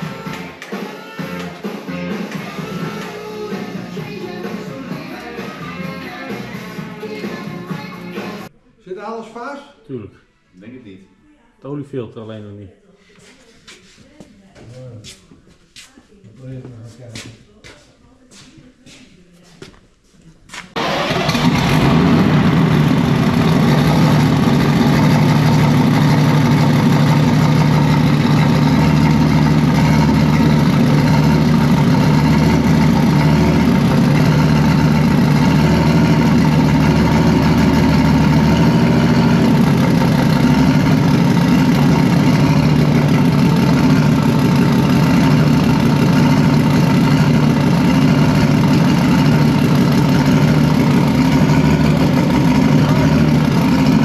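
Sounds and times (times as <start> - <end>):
engine running: 1.3 - 8.5, 20.8 - 54.0.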